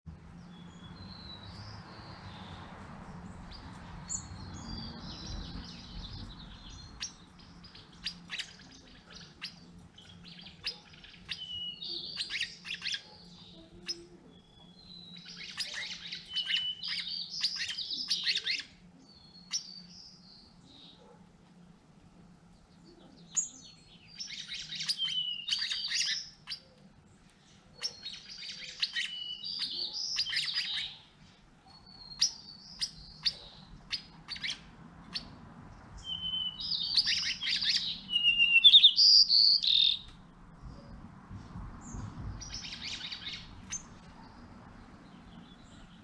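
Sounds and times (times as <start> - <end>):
songbirds chirping: 0.1 - 46.0.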